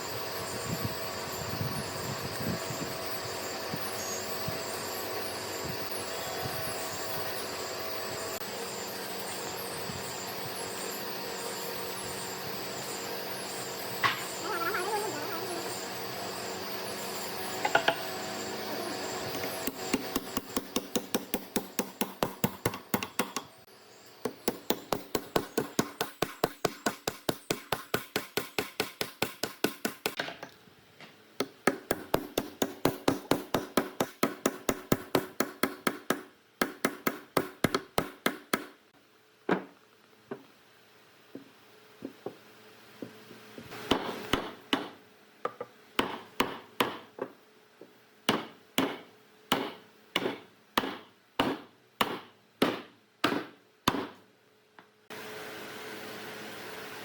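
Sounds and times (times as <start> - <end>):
machine-like hum: 0.0 - 25.9
rapid hammer blows on wood: 24.2 - 30.2, 31.4 - 38.8, 48.3 - 54.2.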